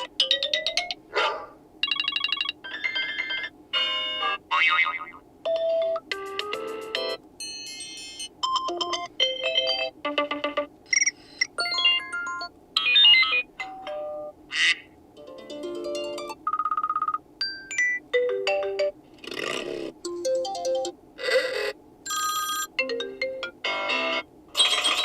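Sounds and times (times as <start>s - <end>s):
phone ringtone melodies: 1.8s - 4.2s, 5.4s - 14.3s, 15.2s - 19.0s, 20.0s - 20.9s, 22.1s - 25.0s.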